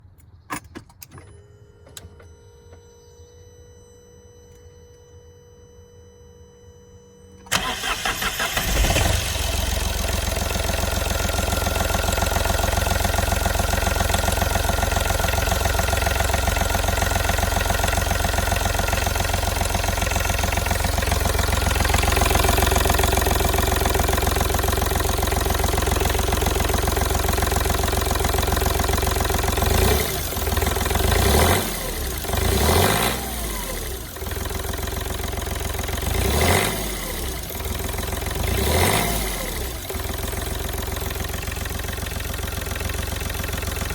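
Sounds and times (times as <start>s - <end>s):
diesel engine starting and idling: 7.4s - 43.9s
engine revving: 7.5s - 14.4s, 29.6s - 34.3s, 36.0s - 40.1s.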